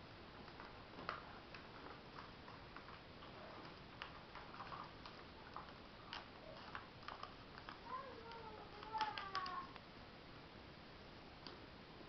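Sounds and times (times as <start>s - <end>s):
paper folding crinkles: 0.3s - 9.8s.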